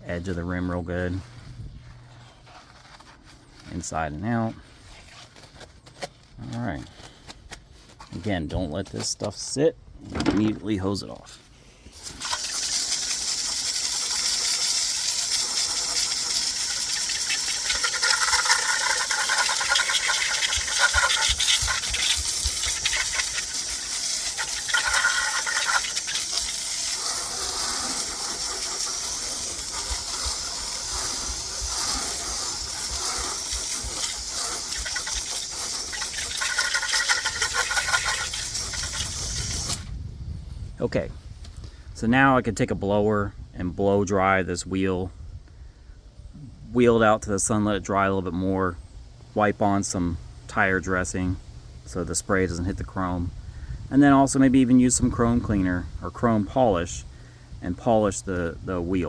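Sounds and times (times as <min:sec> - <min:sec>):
garden hose spraying water: 0:11.9 - 0:39.9.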